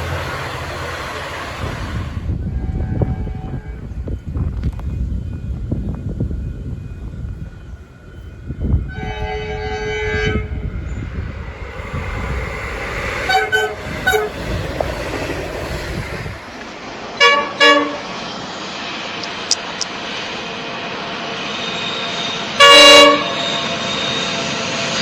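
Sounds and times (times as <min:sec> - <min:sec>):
train rumbling: 0:00.0 - 0:25.0
train horn blasts: 0:02.4 - 0:04.0, 0:08.8 - 0:10.6, 0:13.2 - 0:14.5, 0:17.2 - 0:18.1, 0:22.6 - 0:23.6.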